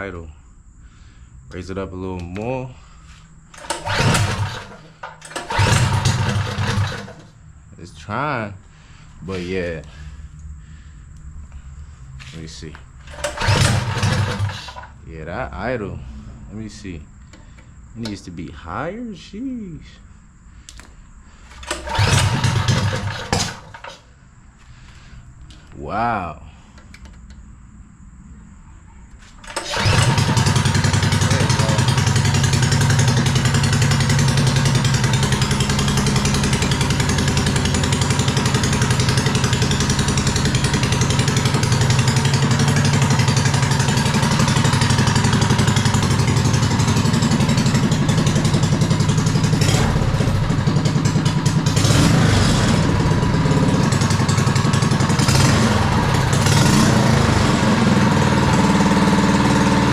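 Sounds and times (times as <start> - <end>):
go-kart engine running: 3.5 - 7.3, 13.1 - 14.9, 21.5 - 24.0, 29.4 - 59.9.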